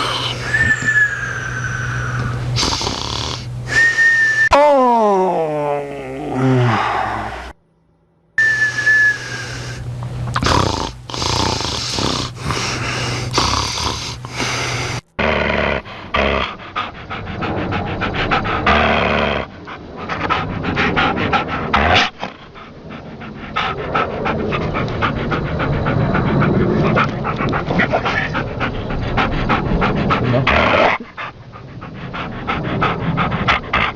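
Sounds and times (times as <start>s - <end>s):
dog snoring: 2.6s - 3.9s, 9.3s - 16.5s.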